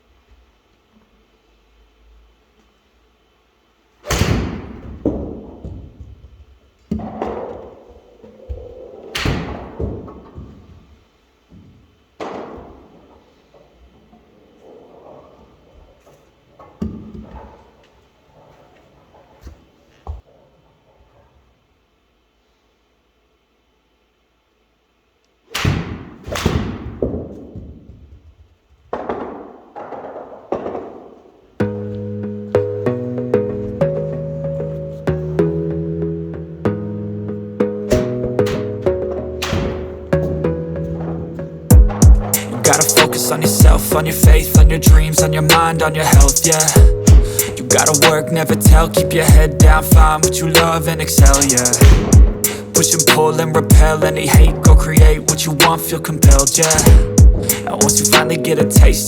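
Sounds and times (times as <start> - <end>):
smaller knocks: 46.2 - 55.2.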